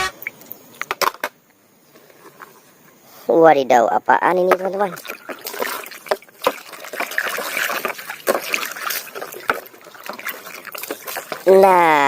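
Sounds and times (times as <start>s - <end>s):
water sloshing and trickling: 4.3s - 12.0s.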